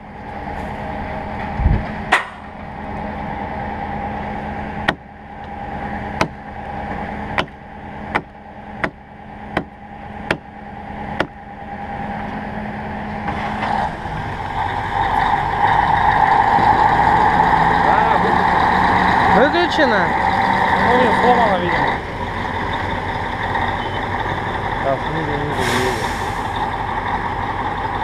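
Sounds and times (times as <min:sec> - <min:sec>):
truck diesel engine running: 0:00.0 - 0:28.0
sharp knocks: 0:04.8 - 0:05.1, 0:06.2 - 0:06.4, 0:07.3 - 0:10.5, 0:11.2 - 0:11.4.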